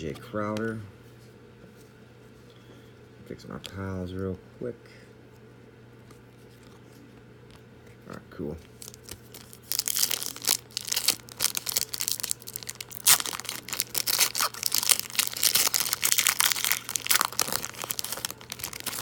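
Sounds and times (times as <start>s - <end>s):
foil wrapper tearing and crinkling: 8.7s - 19.0s.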